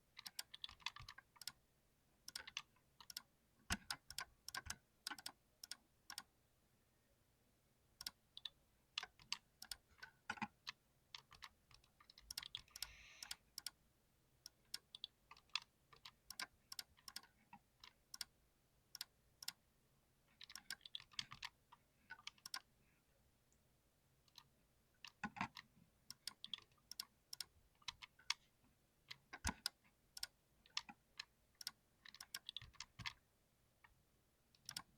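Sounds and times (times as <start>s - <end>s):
mechanical keyboard key clicks: 2.3s - 6.2s, 12.3s - 13.7s, 34.6s - 34.9s.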